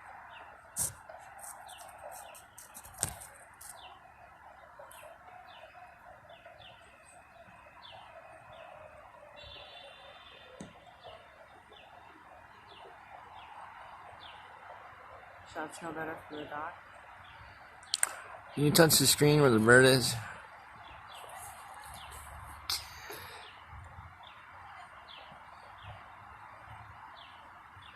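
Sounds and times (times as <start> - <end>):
background noise: 0.0 - 27.9
bird chirping: 0.1 - 14.6
sharp clicks: 17.8 - 18.2.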